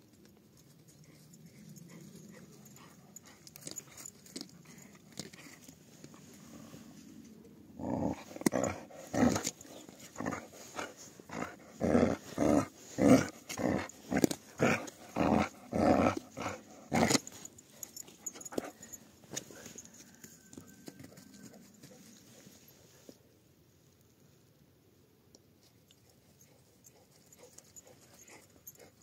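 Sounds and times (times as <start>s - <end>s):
puppy growling: 7.8s - 17.5s.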